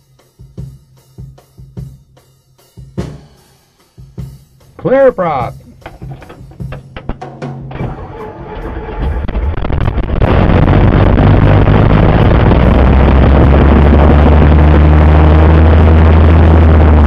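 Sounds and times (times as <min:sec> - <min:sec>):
propeller plane engine starting: 0:07.7 - 0:17.0.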